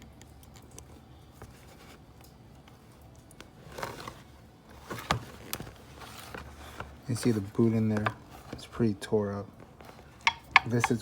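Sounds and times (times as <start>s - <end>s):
rustling: 3.4s - 8.8s.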